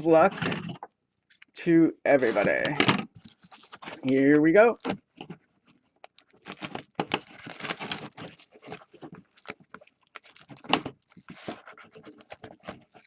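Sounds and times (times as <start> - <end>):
plastic shrink wrap tearing: 6.0 - 13.0.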